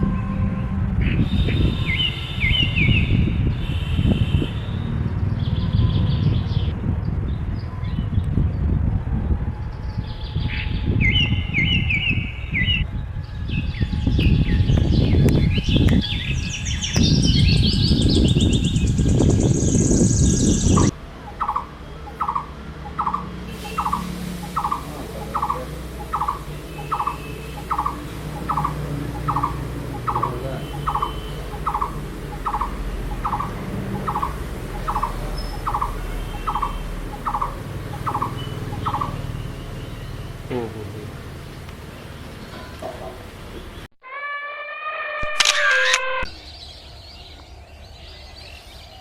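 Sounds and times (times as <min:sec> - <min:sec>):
small birds twittering: 0:01.0 - 0:08.8, 0:09.6 - 0:43.9, 0:46.3 - 0:49.0
bird calling hollow notes: 0:20.6 - 0:40.5.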